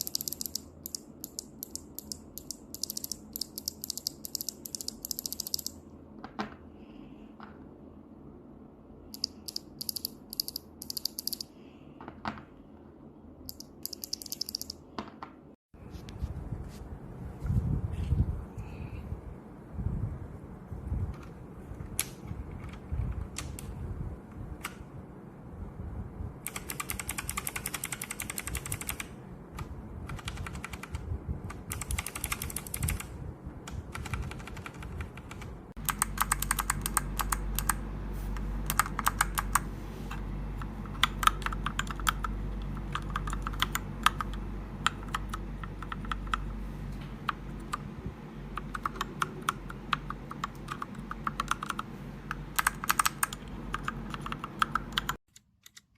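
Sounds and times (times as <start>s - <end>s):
mechanical keyboard typing: 0.0s - 5.8s, 9.2s - 11.5s, 13.5s - 14.8s, 26.4s - 37.8s, 38.6s - 39.7s, 40.6s - 46.5s, 48.6s - 55.9s
steady low hum: 0.0s - 55.2s.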